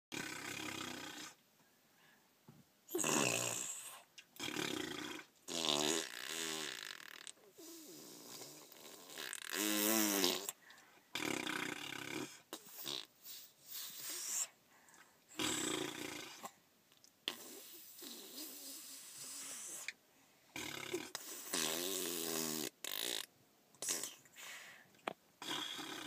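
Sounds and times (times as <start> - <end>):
imitation fart noises: 0.1 - 1.4, 2.9 - 10.6, 11.2 - 13.1, 15.4 - 16.4, 20.6 - 24.2.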